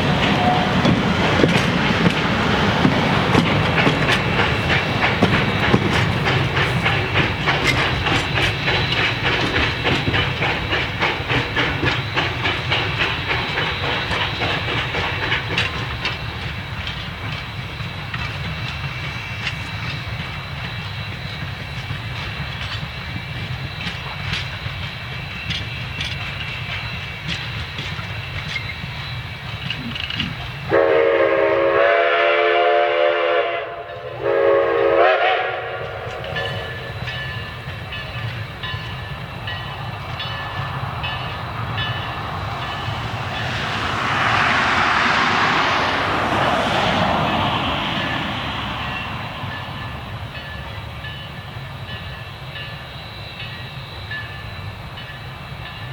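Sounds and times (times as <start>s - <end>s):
steam hiss: 0.0s - 16.8s, 34.2s - 51.2s
train clicking along rails: 0.0s - 55.9s
train rumbling: 0.0s - 55.9s
steam whistle blasts: 30.7s - 36.1s.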